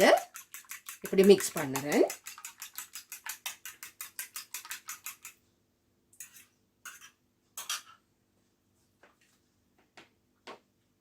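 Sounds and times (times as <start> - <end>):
eggs beaten in a bowl: 0.0 - 5.4, 6.2 - 7.2.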